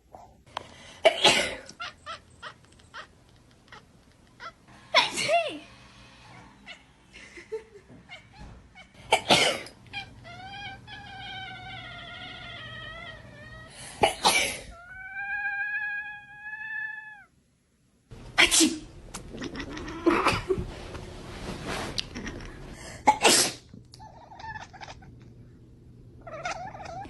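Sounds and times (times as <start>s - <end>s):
cat meowing: 9.9s - 13.8s, 14.7s - 17.3s, 19.4s - 20.2s, 24.0s - 25.1s, 26.2s - 27.0s
person sneezing: 23.1s - 23.6s.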